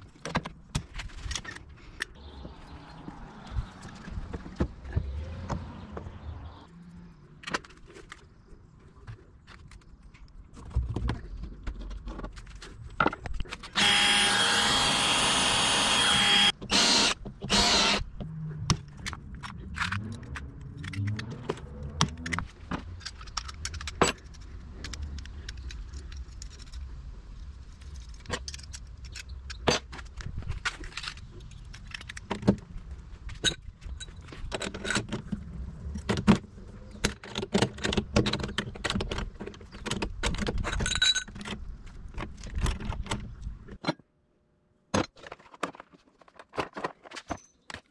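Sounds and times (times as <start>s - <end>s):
power drill running: 13.8s - 18.0s
tools clicking and knocking: 15.9s - 26.9s, 27.9s - 44.0s.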